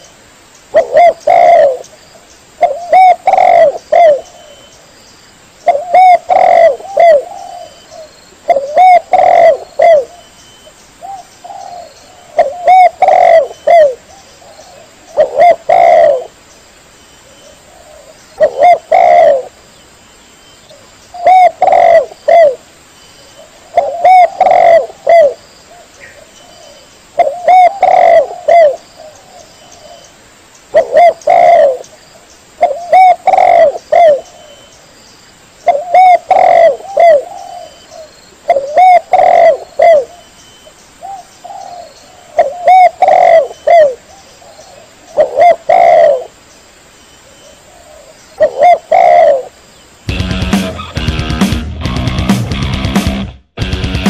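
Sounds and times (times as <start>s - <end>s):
dove cooing: 0.7s - 1.8s, 2.6s - 4.7s, 5.6s - 10.3s, 11.0s - 16.4s, 17.2s - 19.6s, 20.7s - 22.6s, 23.3s - 30.1s, 30.7s - 32.0s, 32.6s - 34.7s, 35.6s - 40.3s, 41.0s - 46.4s, 47.2s - 49.6s.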